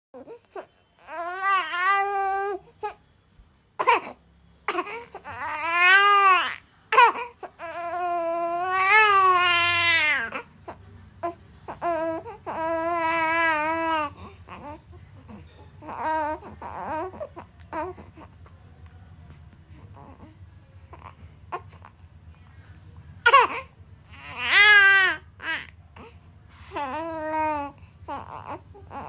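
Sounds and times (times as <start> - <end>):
baby crying: 0.2 - 3.0, 3.8 - 18.3, 23.2 - 29.0.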